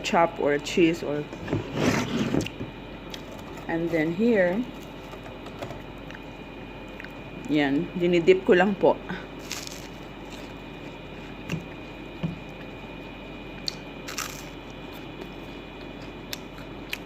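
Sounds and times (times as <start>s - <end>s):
crisp crunches: 9.3s - 11.4s, 13.6s - 15.4s
person chewing: 9.4s - 17.0s.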